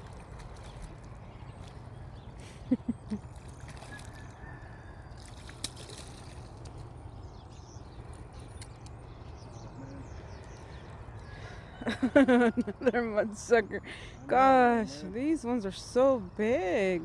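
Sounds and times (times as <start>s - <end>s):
water sloshing: 0.0s - 9.1s.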